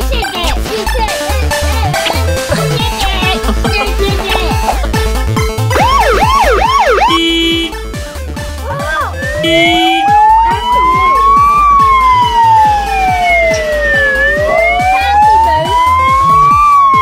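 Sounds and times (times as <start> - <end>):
background music with steady beat: 0.0 - 17.0
siren wailing: 5.7 - 7.6, 9.0 - 17.0.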